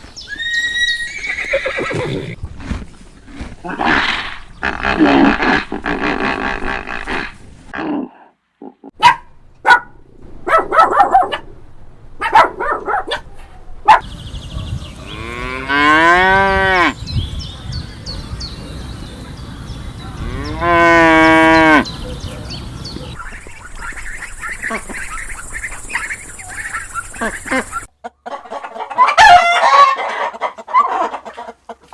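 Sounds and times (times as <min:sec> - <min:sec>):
cow mooing: 0:15.0 - 0:17.0, 0:20.2 - 0:21.9.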